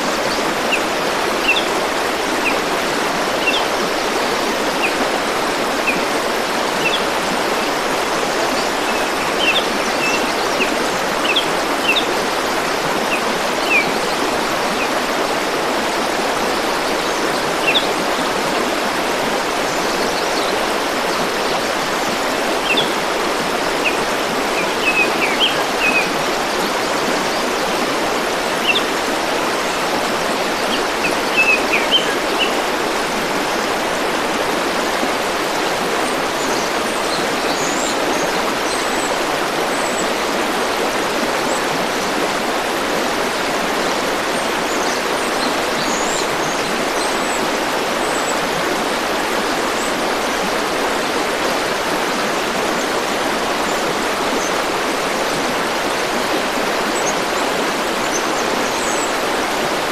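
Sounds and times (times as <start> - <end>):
forest stream rushing: 0.0 - 59.9
small birds chirping: 29.6 - 32.6.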